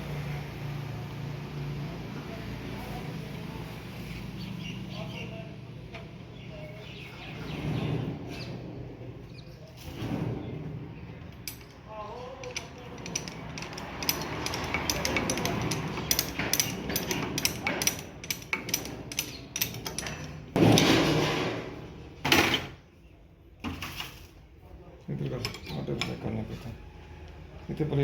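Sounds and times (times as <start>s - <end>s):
ratchet wrench clicking: 12.4s - 20.3s.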